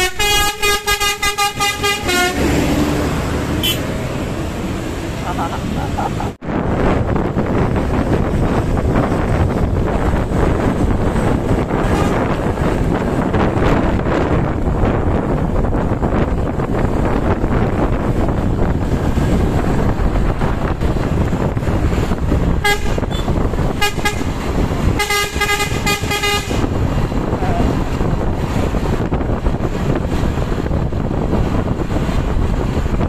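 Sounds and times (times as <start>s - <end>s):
multi-note musical air horn: 0.0s - 2.4s, 25.0s - 26.6s
traffic noise: 0.0s - 33.0s
wind on microphone: 6.4s - 33.0s.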